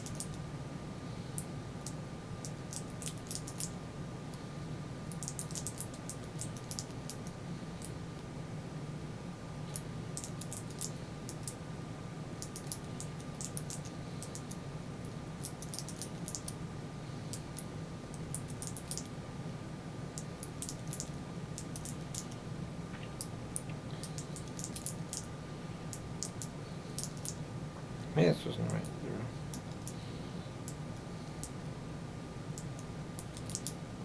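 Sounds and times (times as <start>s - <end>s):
faint steady hum: 0.0s - 34.0s.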